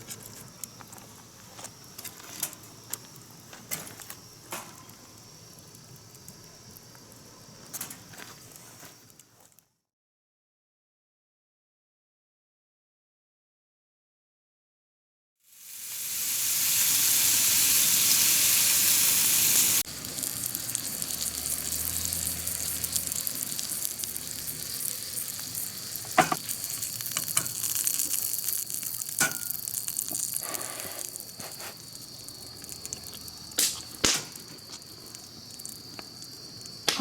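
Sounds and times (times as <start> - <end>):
food sizzling in a pan: 15.4 - 37.0
utensils clicking against pan: 20.0 - 30.4.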